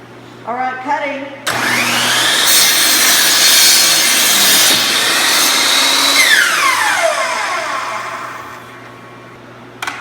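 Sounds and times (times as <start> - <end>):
miter saw whining: 1.5 - 8.8
saw blade spinning down: 1.5 - 8.8.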